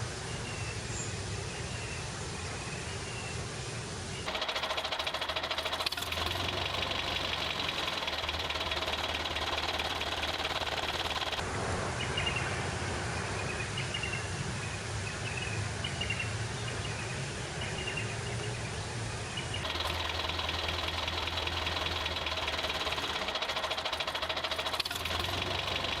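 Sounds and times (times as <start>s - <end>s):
small electric toy motor buzzing: 4.3s - 11.4s, 19.6s - 26.0s.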